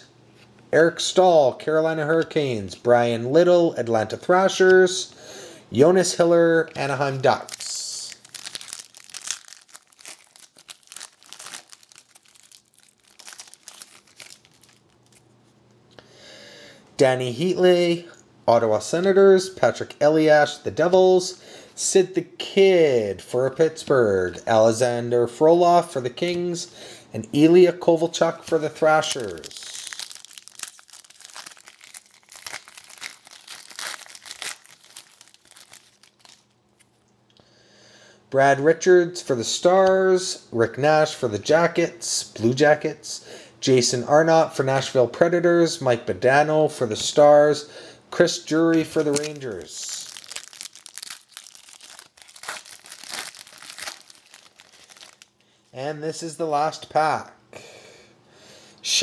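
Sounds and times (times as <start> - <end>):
wrapper crinkling and crumpling: 6.7 - 15.3, 28.5 - 36.6, 48.6 - 55.4
cards being handled: 28.5 - 36.9, 48.7 - 55.2.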